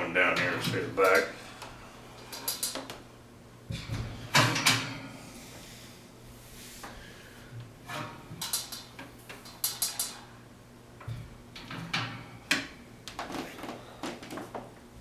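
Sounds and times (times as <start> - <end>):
fan clicks knocks and rattles: 3.7 - 5.0.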